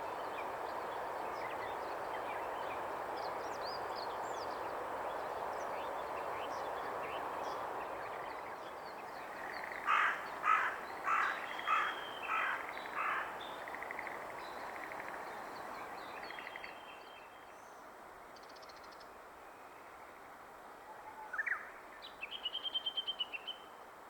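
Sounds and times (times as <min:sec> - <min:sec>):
bird harsh calls: 0:09.9 - 0:13.3.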